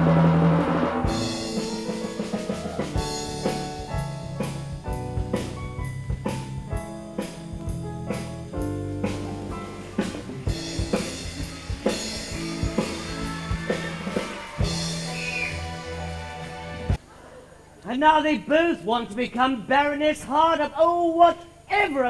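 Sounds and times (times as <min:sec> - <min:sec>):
cymbals washing: 0:00.0 - 0:17.0
instrumental band music: 0:00.0 - 0:17.0.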